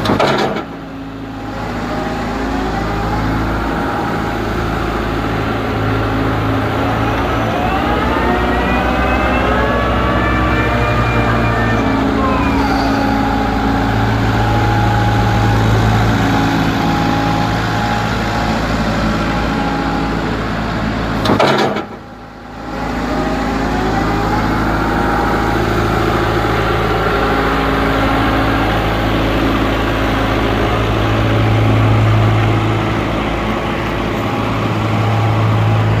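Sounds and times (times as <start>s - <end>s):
excavator diesel engine running: 0.0s - 36.0s
hydraulic whining: 0.0s - 36.0s
sharp click: 21.2s - 22.0s.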